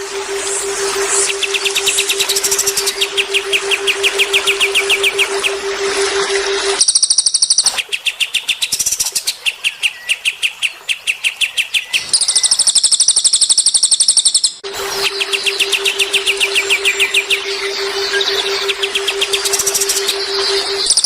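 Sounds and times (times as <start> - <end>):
bird trill: 0.0 - 6.1, 6.7 - 21.0
low pulsing tone: 0.0 - 7.0, 14.6 - 21.0
songbird chirping: 0.0 - 21.0.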